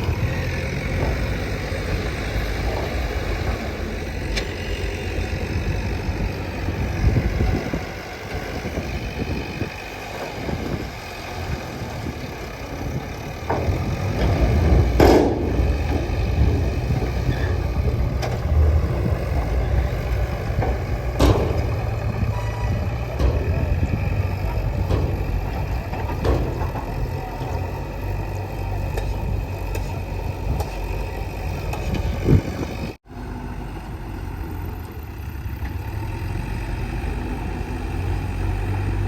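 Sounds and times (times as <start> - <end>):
heavy diesel machinery running: 0.0 - 39.0
sharp metal clanks and knocks: 13.5 - 16.9, 20.6 - 22.0.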